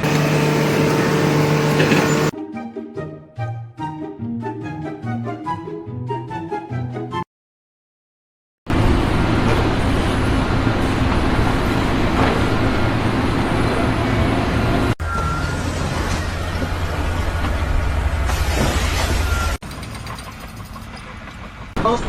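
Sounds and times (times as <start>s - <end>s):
heavy engine running: 0.0s - 2.4s, 8.7s - 22.0s.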